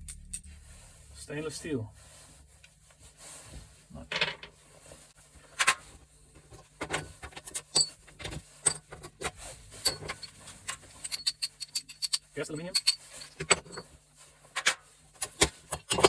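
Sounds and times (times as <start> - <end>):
metal stove parts clinking: 9.8 - 13.9.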